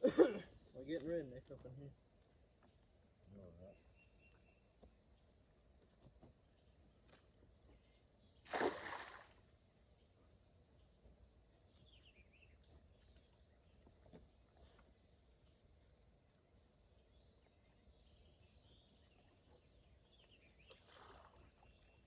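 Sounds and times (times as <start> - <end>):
crickets chirping: 0.0 - 22.0
water splash: 8.4 - 9.4, 20.7 - 21.6.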